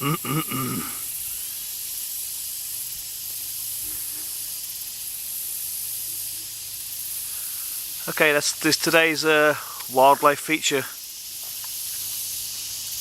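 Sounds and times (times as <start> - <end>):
high-pitched outdoor hiss: 0.0 - 13.0.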